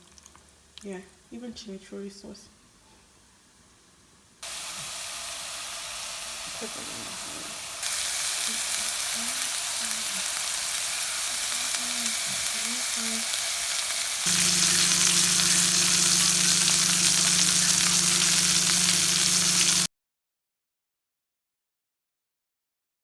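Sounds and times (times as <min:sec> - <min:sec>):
steak sizzling in a frying pan: 0:04.4 - 0:19.9
steady low hum: 0:14.3 - 0:19.9.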